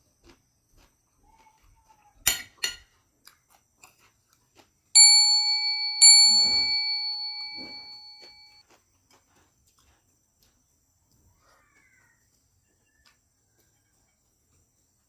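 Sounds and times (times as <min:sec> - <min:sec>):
bell-like dings: 0:05.0 - 0:08.6.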